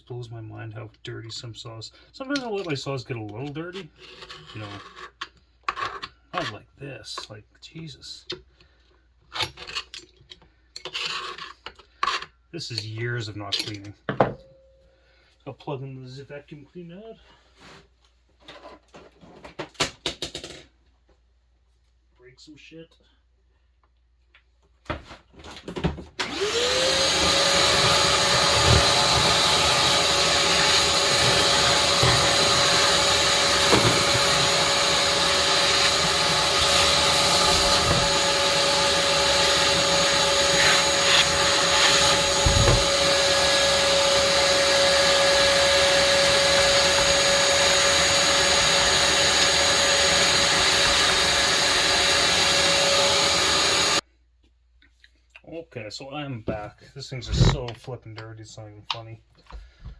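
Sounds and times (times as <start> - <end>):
vacuum cleaner motor whine: 26.2 - 54.0.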